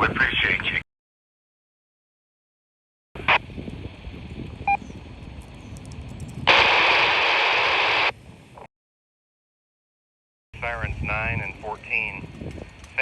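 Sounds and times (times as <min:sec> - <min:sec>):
weak hissy radio signal: 0:06.5 - 0:08.2
loud static hiss burst: 0:06.5 - 0:08.7.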